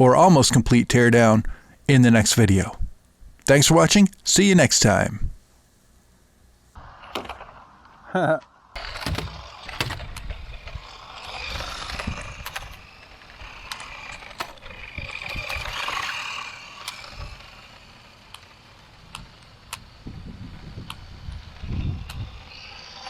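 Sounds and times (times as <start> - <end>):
scattered clicks: 8.4 - 19.9
light mechanical clatter: 8.8 - 23.0.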